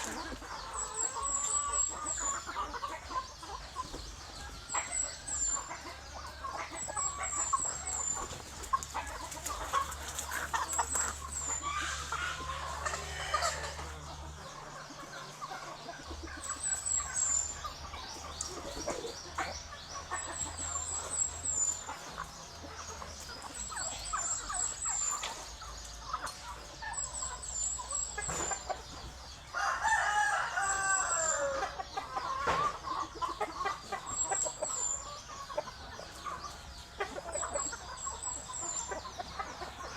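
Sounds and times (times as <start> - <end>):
chickens clucking: 0.0 - 39.9
rooster crowing: 11.7 - 14.0, 29.6 - 31.8.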